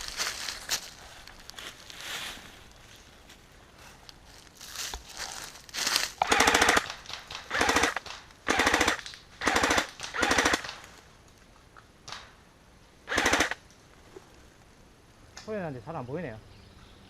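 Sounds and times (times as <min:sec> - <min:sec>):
airsoft gun full-auto bursts: 0:06.2 - 0:10.8, 0:13.1 - 0:13.6.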